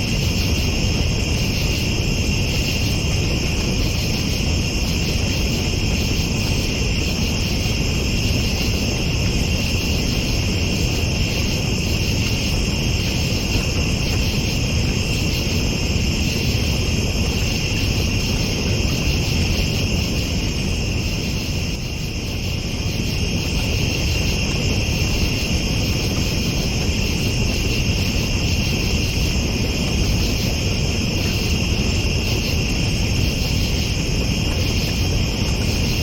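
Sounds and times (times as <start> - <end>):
constant low rumble: 0.0 - 36.0
night insects trilling: 0.0 - 36.0.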